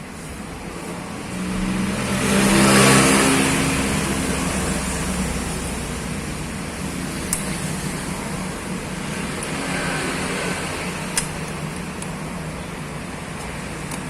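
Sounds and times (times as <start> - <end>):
vehicle engine passing by: 1.0 - 11.1.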